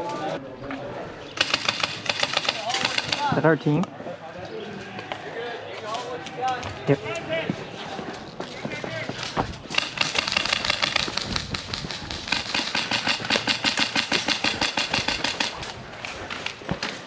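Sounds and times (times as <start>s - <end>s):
airsoft guns firing rapidly: 1.4s - 3.4s, 9.7s - 15.8s.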